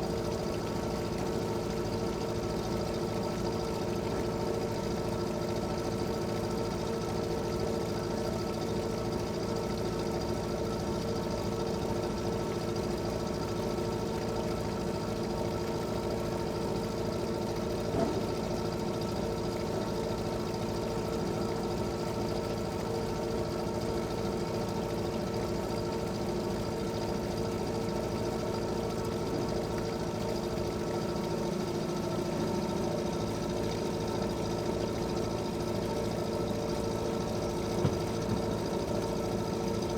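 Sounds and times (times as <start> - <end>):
brief knock: 17.9 - 18.2, 37.8 - 38.5
boat engine running: 26.5 - 39.9.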